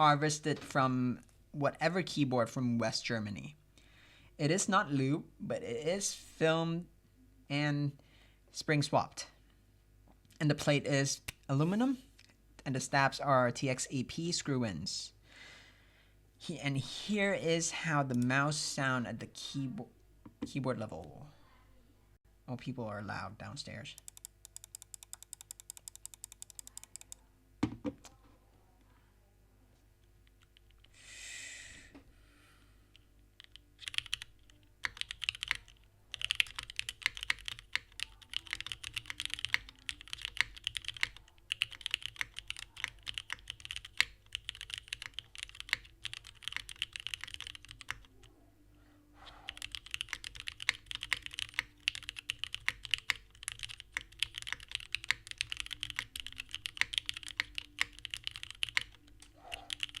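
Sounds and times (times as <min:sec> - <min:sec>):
fast keyboard typing: 0:24.0 - 0:27.2, 0:33.4 - 0:48.3, 0:49.5 - 1:00.0.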